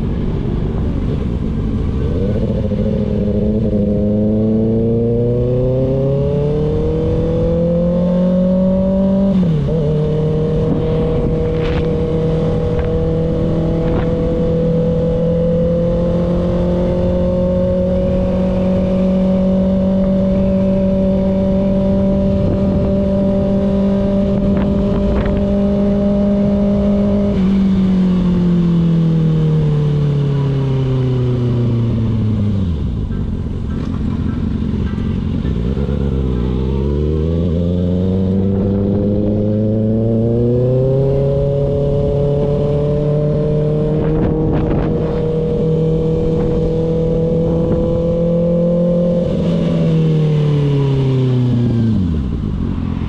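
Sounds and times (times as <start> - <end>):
wind rushing over microphone: 0.0 - 29.4, 30.8 - 53.0
motorcycle engine: 0.0 - 53.0.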